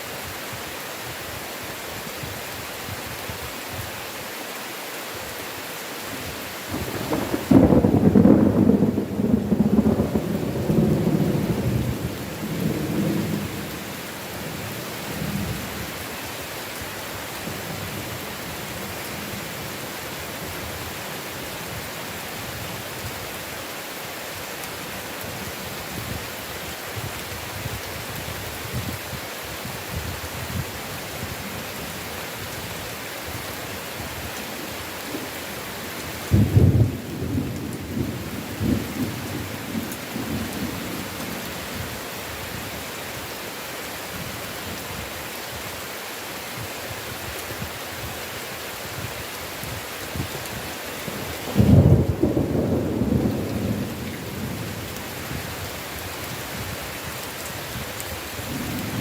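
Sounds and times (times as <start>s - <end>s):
heavy rain hissing: 0.0s - 59.0s
loud thunderclap: 6.7s - 13.5s, 36.3s - 40.8s, 51.5s - 54.6s
thunder rumbling: 6.7s - 13.9s, 36.3s - 41.8s, 51.5s - 55.4s.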